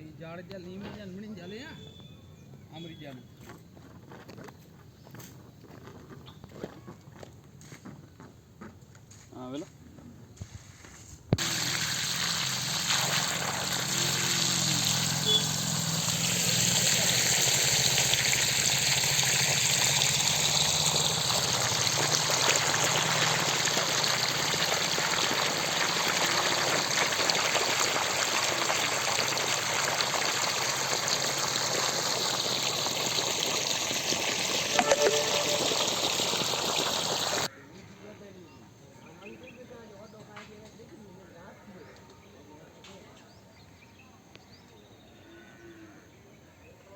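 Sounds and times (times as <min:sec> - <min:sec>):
rush of flowing water: 0:11.4 - 0:37.5.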